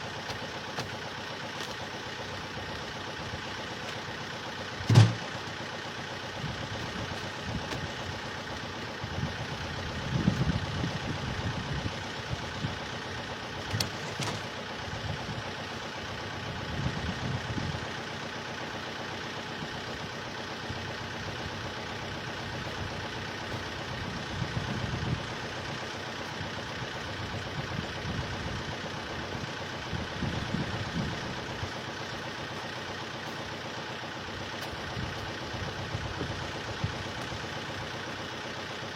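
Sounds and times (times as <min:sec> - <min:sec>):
engine running: 0:00.0 - 0:38.9
low rumbles: 0:09.0 - 0:13.0, 0:21.2 - 0:31.8.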